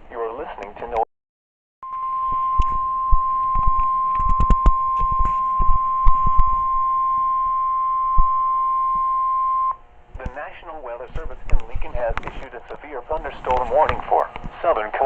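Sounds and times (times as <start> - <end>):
steady alarm beep: 1.8 - 9.8
short clicks and thumps: 3.5 - 6.6.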